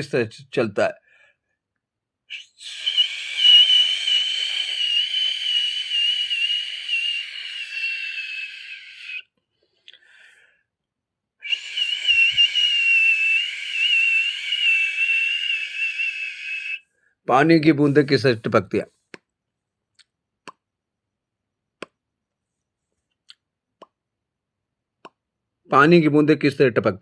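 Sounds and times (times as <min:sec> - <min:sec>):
person whistling like an airplane: 0:02.3 - 0:09.3, 0:11.4 - 0:16.8.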